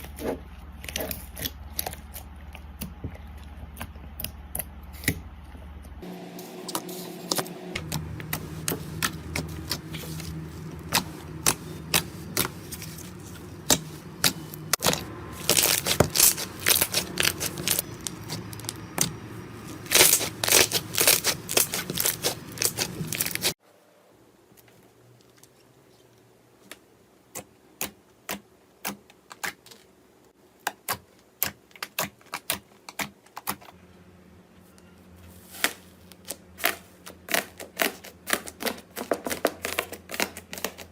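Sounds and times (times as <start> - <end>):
low steady hum: 0.0 - 27.2
slime popping and crackling: 13.6 - 19.2, 19.8 - 23.5.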